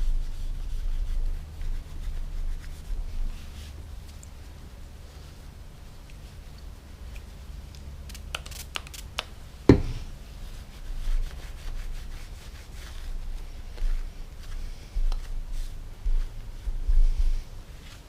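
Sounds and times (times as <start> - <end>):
tool set down knock: 9.7 - 10.0
dull handling thumps: 9.7 - 10.1.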